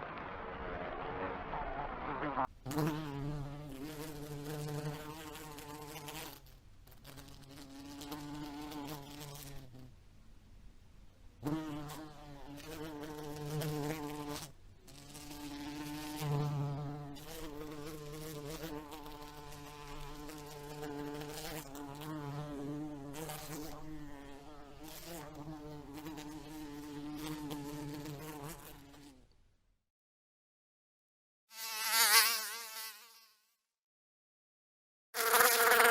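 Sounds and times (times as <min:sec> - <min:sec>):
house fly buzzing: 0:02.0 - 0:09.9, 0:11.4 - 0:29.2, 0:31.5 - 0:33.5, 0:35.2 - 0:35.9.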